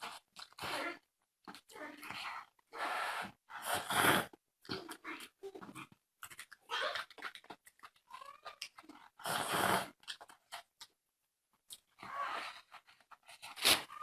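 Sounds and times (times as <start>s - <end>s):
person chewing and smacking: 0.0s - 0.7s, 4.6s - 9.2s.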